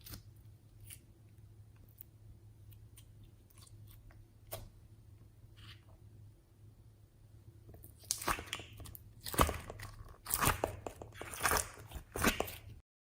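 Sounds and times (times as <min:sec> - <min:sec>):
slime crackling and squishing: 0:07.7 - 0:12.8.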